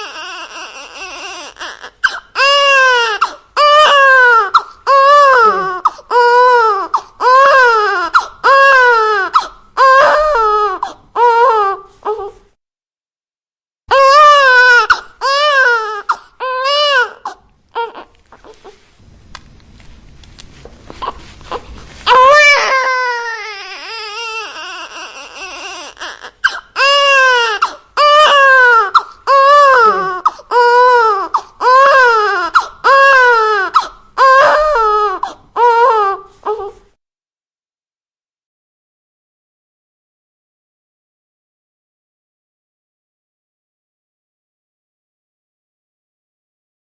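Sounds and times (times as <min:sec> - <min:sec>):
newborn baby crying: 0:00.0 - 0:12.5, 0:13.9 - 0:18.9, 0:20.9 - 0:36.9.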